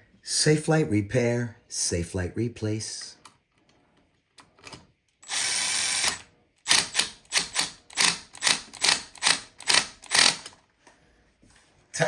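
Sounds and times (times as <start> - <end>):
power driver running: 5.2 - 10.5.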